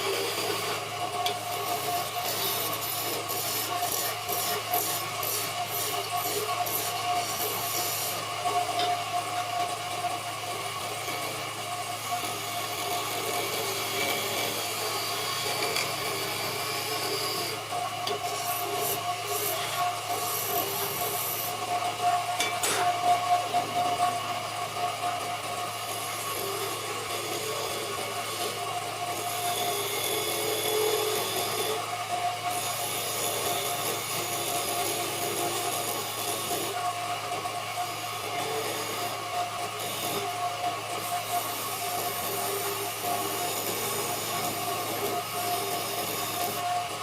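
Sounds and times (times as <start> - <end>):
tool scraping spinning wood: 0.0 - 9.1, 11.0 - 23.8, 29.2 - 31.9
lathe motor hum: 0.0 - 47.0.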